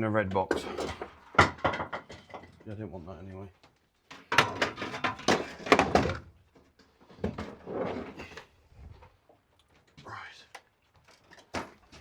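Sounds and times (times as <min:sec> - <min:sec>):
hand tools clattering in tool box: 0:00.4 - 0:02.6, 0:04.1 - 0:06.2.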